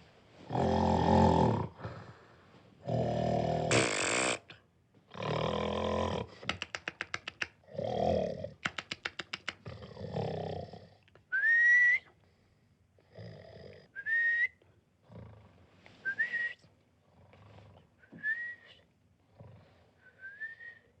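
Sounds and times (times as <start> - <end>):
whistling snores: 13.9 - 15.3, 16.0 - 16.7, 18.0 - 18.8, 20.0 - 21.0.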